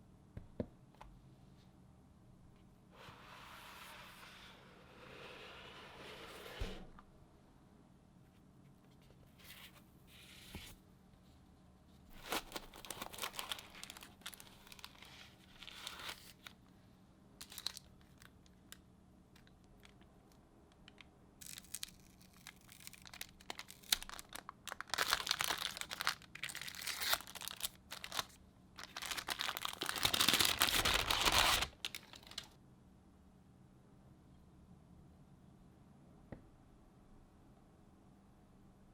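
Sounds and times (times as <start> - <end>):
packaging crinkling and tearing: 12.1 - 16.6, 17.4 - 18.8, 20.8 - 32.6.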